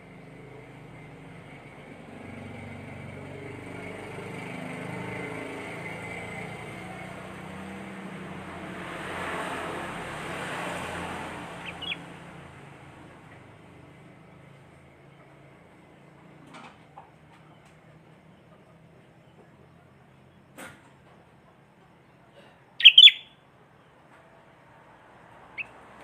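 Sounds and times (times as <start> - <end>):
passing vehicle engine hum: 0.0 - 19.6, 22.8 - 26.0
short high chirps: 11.6 - 12.0, 22.8 - 23.3.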